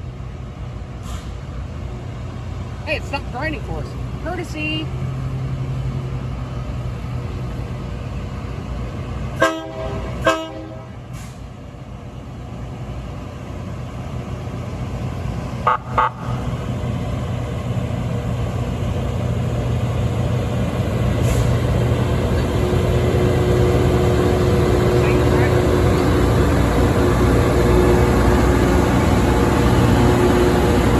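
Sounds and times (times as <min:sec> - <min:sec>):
diesel engines running: 0:00.0 - 0:30.9
higher horn toots: 0:09.4 - 0:11.0
train horn blasts: 0:09.4 - 0:11.0.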